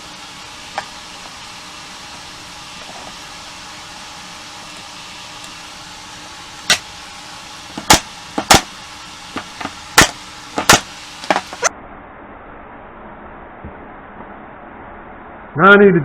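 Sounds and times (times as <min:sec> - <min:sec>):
nail gun shots into wood: 0:07.8 - 0:08.7, 0:10.0 - 0:11.5.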